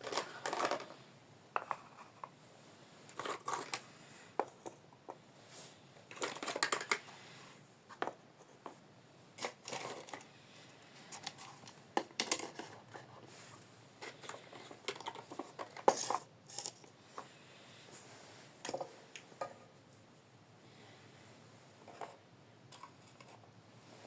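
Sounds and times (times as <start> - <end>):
plastic toy pieces clicking: 6.1 - 7.0.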